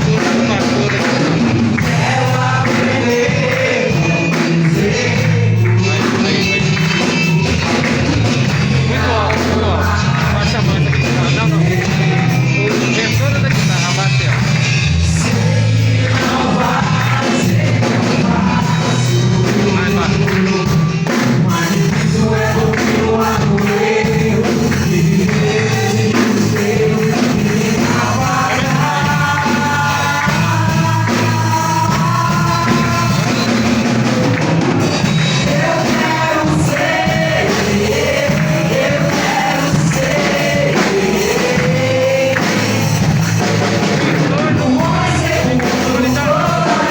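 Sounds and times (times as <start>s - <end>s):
gospel group singing with band: 0.0s - 46.9s.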